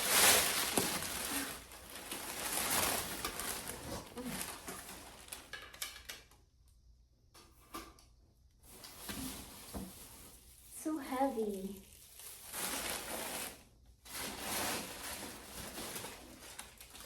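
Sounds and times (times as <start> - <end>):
packaging rustling: 0.0 - 5.8, 11.9 - 17.0.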